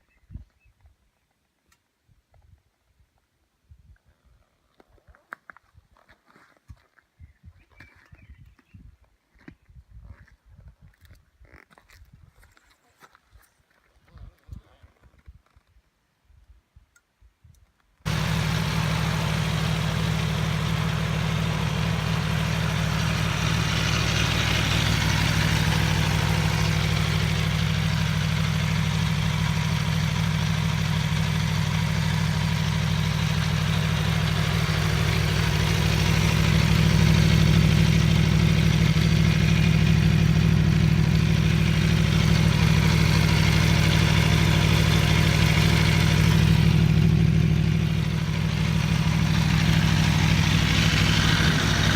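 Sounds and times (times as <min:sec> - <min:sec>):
motorcycle engine idling: 0:18.1 - 0:51.9.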